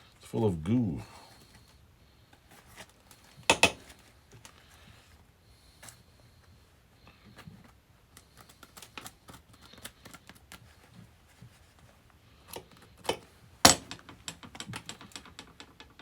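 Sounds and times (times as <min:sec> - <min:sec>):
small metal parts clicking: 0:12.5 - 0:16.0
sharp knock: 0:13.7 - 0:16.0.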